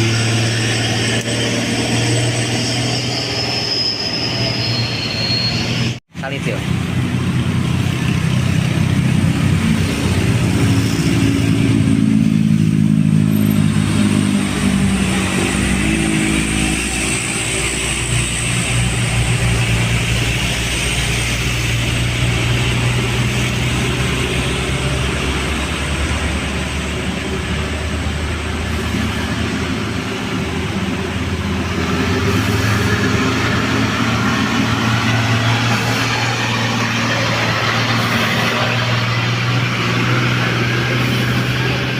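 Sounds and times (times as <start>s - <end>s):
truck diesel engine climbing uphill: 0.0s - 41.9s.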